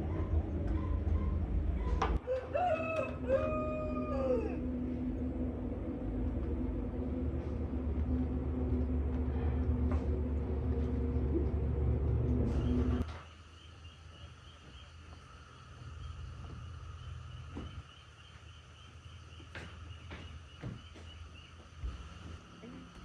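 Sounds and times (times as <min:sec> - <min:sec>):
steady low rumble: 0:00.0 - 0:02.2, 0:03.0 - 0:13.0
rooster crowing: 0:02.2 - 0:05.1.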